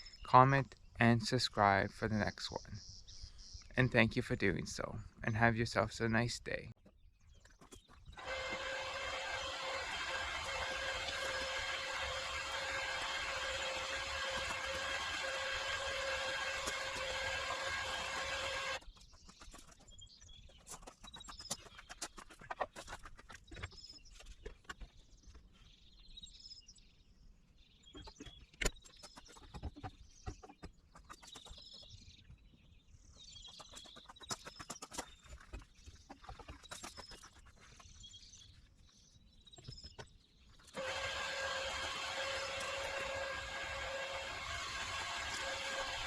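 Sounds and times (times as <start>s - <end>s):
birds chirping: 0.0s - 46.0s
mechanical hum: 8.1s - 18.8s, 40.7s - 46.0s.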